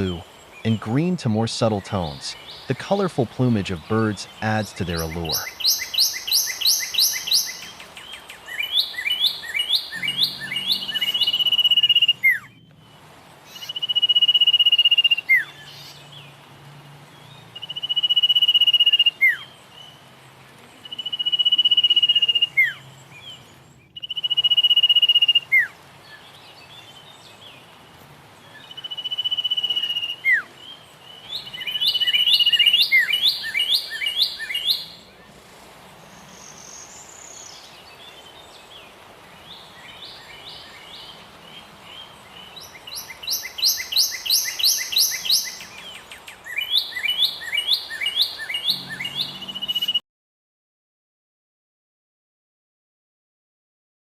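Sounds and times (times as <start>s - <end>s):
bird chirps: 0.0s - 12.9s, 20.8s - 27.4s, 28.5s - 35.2s, 36.2s - 50.0s
bird whistling long notes: 8.9s - 12.6s.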